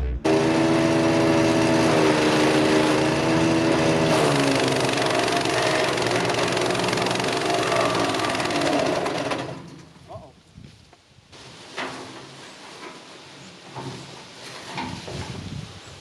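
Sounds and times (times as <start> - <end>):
wood chipper engine running: 0.2 - 9.8.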